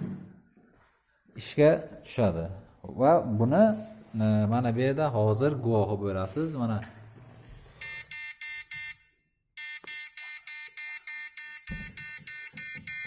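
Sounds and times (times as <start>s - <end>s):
alarm buzzer beeping rapidly: 7.8s - 13.0s.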